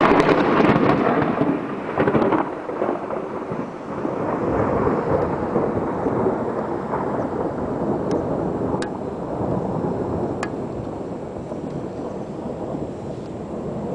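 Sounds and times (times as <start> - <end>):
rain: 0.0 - 13.9
thunder rumbling: 0.0 - 13.9.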